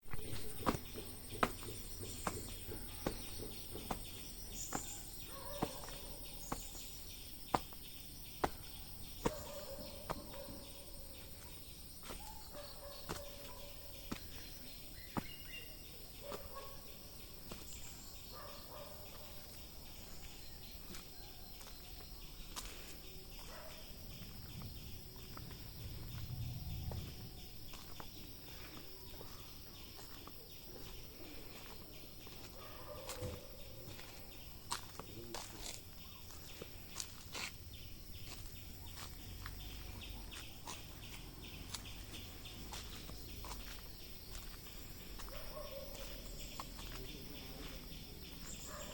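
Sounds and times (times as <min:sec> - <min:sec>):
birds calling: 0:00.0 - 0:48.9
sharp knocks: 0:00.5 - 0:04.8
low rumble: 0:25.4 - 0:27.6.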